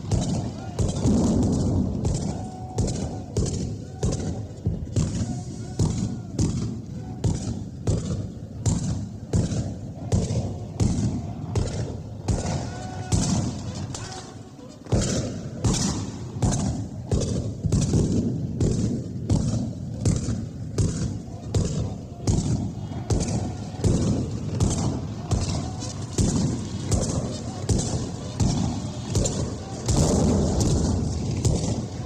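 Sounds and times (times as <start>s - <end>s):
men shouting: 0.0s - 7.5s, 9.8s - 14.9s, 21.2s - 32.0s
rapid gunshots: 0.0s - 14.3s, 14.9s - 32.0s.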